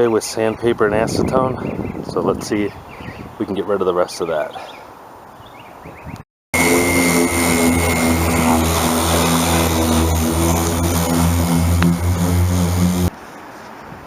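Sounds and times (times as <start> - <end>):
electric power sander humming: 6.6 - 13.1.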